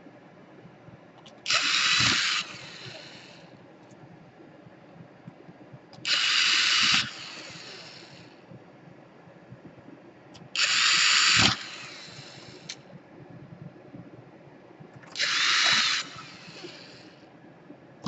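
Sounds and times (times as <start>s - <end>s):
electric screwdriver whirring: 1.5s - 3.2s, 6.0s - 7.7s, 10.6s - 12.6s, 15.1s - 17.0s.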